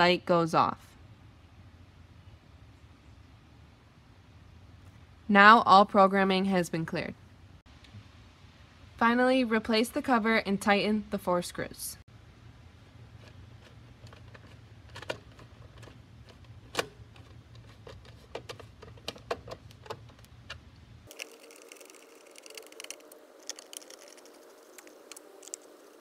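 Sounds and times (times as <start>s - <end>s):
low background hum: 0.0s - 26.0s.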